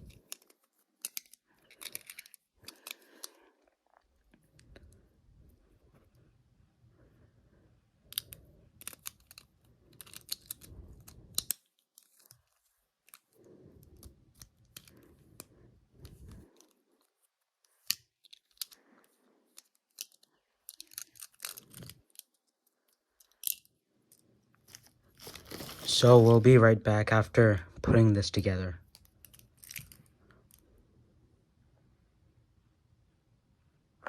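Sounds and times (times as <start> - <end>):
plastic parts clicking: 0.0 - 3.4, 8.1 - 16.8, 17.6 - 18.8, 19.5 - 25.8, 28.9 - 30.6
plastic parts scraping: 0.0 - 4.4, 8.1 - 26.6.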